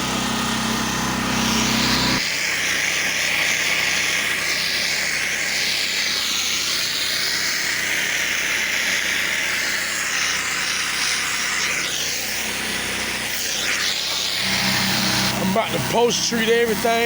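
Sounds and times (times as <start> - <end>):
low engine hum: 0.0 - 2.2
pressure washer water jet hissing: 0.0 - 17.0.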